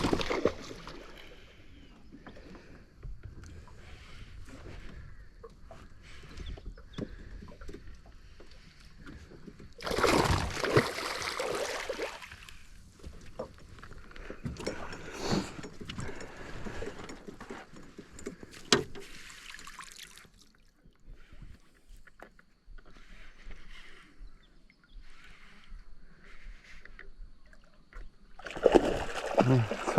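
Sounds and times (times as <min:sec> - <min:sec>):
fish splashing in water: 0:00.0 - 0:01.4, 0:09.8 - 0:12.5, 0:28.4 - 0:29.9.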